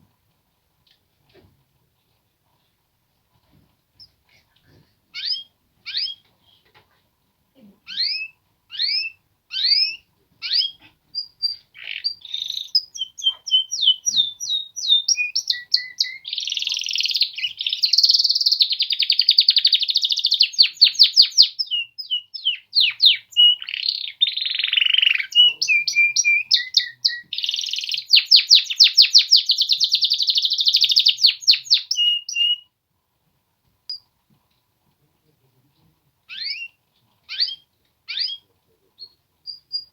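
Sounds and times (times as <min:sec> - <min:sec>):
canaries singing: 0:05.1 - 0:06.6, 0:07.8 - 0:32.7, 0:36.3 - 0:39.9.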